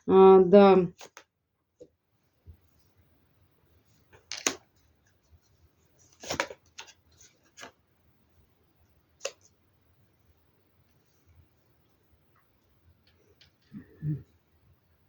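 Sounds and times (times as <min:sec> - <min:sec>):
cards rustling and snapping: 0:01.0 - 0:01.3, 0:04.1 - 0:04.7, 0:06.1 - 0:07.8, 0:09.2 - 0:09.5.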